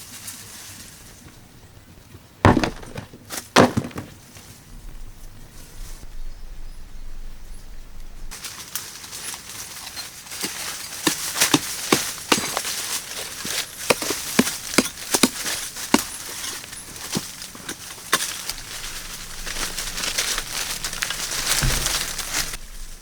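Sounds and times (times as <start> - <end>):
rustling: 0.0 - 23.0
sharp knocks and snaps: 13.9 - 22.6.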